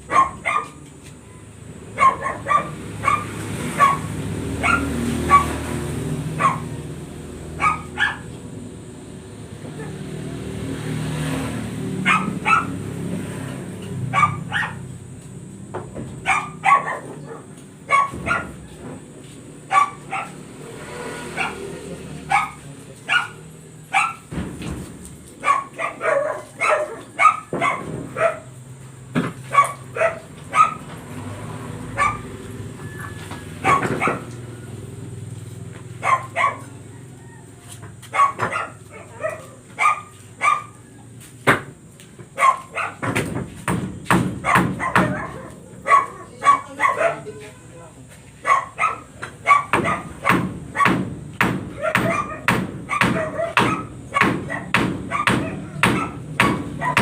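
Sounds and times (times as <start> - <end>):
dog barking: 0.0 - 0.8, 1.9 - 6.9, 7.5 - 8.4, 9.7 - 10.1, 11.9 - 13.0, 14.1 - 14.9, 16.2 - 18.9, 19.7 - 24.3, 25.4 - 28.6, 29.4 - 30.9, 31.9 - 32.4, 33.6 - 34.7, 36.0 - 37.4, 38.0 - 41.0, 42.4 - 43.2, 44.4 - 47.7, 48.4 - 51.0, 51.7 - 57.0.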